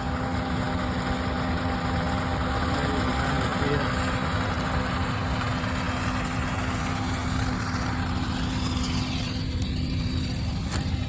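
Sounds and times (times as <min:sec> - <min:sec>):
combine harvester engine drone: 0:00.0 - 0:11.0
threshing rushing noise: 0:03.0 - 0:11.0.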